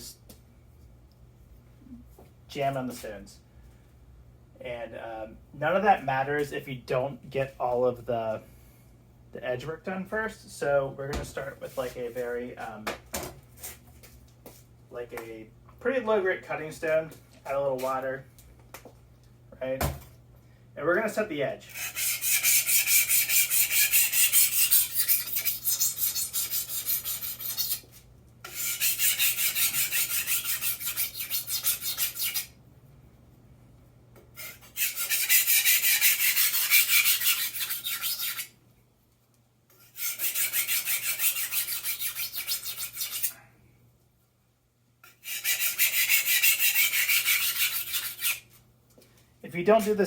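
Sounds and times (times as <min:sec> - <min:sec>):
knife scraping on whetstone: 0:21.7 - 0:27.9, 0:28.5 - 0:32.5, 0:34.4 - 0:38.5, 0:39.8 - 0:43.3, 0:45.1 - 0:48.4.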